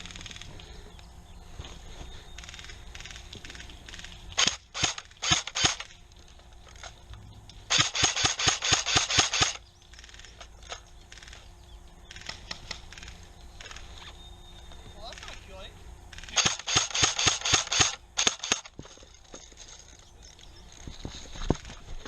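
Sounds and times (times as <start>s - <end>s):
airsoft rifle firing shots: 3.9s - 5.9s, 7.7s - 11.4s, 16.2s - 18.8s.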